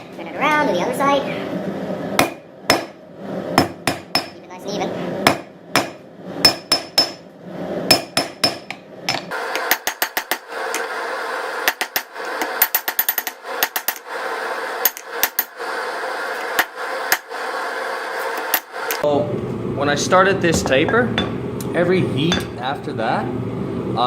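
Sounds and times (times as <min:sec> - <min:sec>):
hammer striking steel on anvil: 0:02.2 - 0:03.0, 0:03.6 - 0:04.4, 0:05.2 - 0:07.2, 0:07.9 - 0:10.9.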